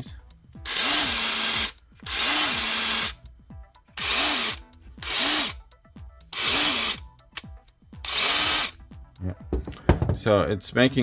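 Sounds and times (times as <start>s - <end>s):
impact driver bursts: 0.7s - 3.2s, 4.0s - 5.6s, 6.4s - 7.0s, 8.0s - 8.8s.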